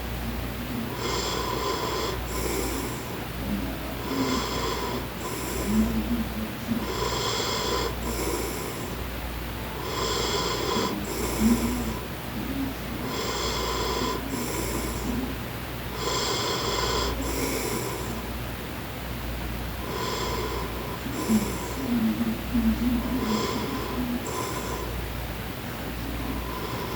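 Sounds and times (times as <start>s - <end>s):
man snoring: 0.9s - 9.0s, 9.8s - 12.1s, 13.0s - 15.3s, 15.9s - 18.3s, 19.8s - 24.9s.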